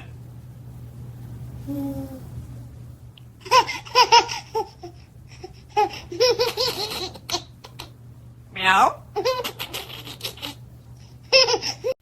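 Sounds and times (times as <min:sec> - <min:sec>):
baby giggling: 0:03.4 - 0:07.9, 0:09.2 - 0:10.6, 0:11.3 - 0:11.9.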